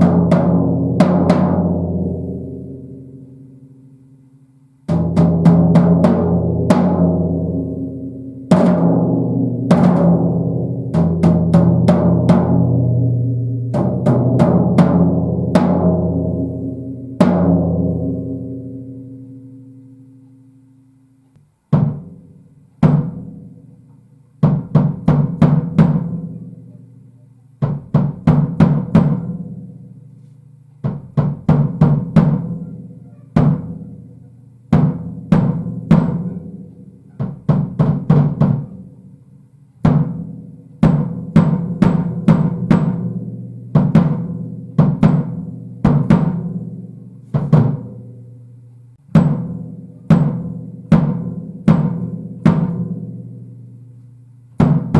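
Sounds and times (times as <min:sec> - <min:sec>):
drum kit fills: 0:04.9 - 0:19.9, 0:21.6 - 0:23.7, 0:27.6 - 0:54.9.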